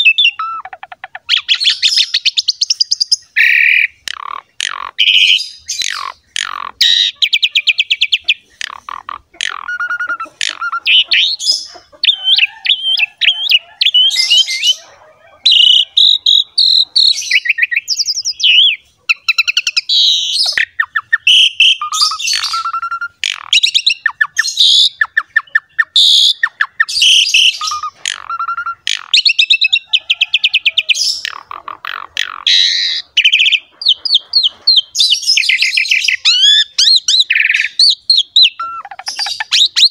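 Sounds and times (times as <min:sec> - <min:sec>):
starling singing: 0:00.0 - 0:39.9.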